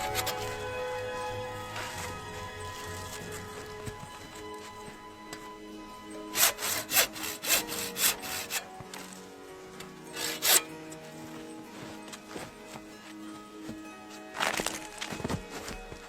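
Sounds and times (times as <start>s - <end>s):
hand saw cutting wood: 0.0s - 0.6s, 6.3s - 9.1s, 10.1s - 10.7s.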